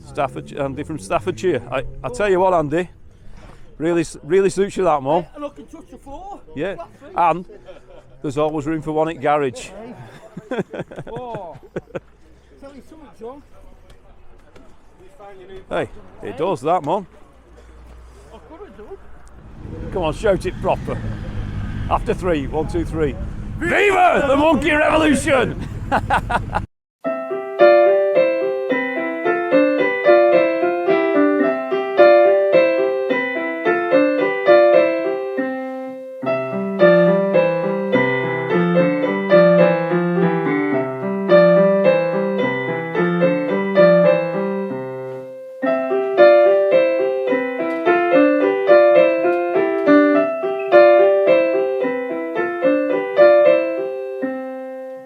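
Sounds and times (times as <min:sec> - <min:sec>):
piano music: 0:27.0 - 0:55.0.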